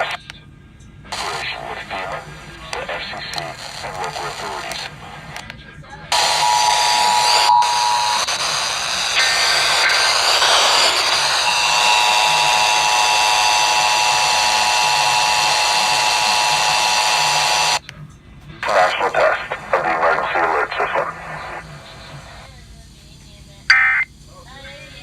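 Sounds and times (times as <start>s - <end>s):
radio hiss: 0.0s - 0.2s, 1.1s - 17.8s, 18.6s - 24.1s
two-tone alert signal: 6.2s - 8.4s.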